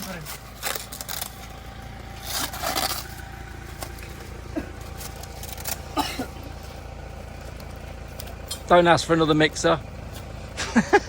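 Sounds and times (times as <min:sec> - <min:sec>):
distant voices: 0:00.0 - 0:11.0
engine running: 0:00.0 - 0:11.0.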